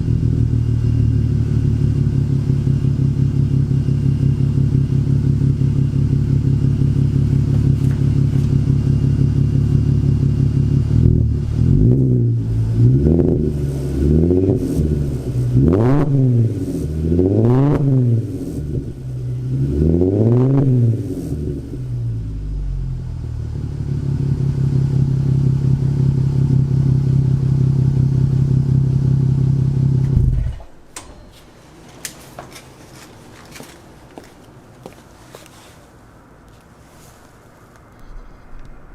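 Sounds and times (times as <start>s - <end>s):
car engine idling and revving: 0.0s - 31.1s, 36.8s - 38.9s
faint engine clicks: 37.7s - 38.8s.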